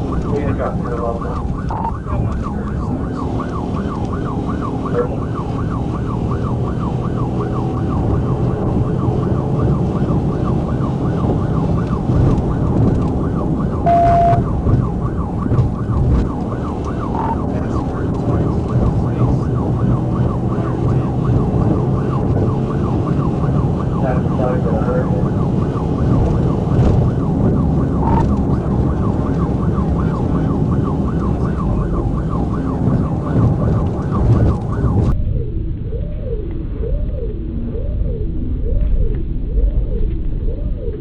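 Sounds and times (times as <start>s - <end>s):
engine and road noise: 0.0s - 41.0s
police siren yelping: 0.0s - 41.0s
steady beep: 1.7s - 2.0s, 13.8s - 14.5s, 17.1s - 17.5s.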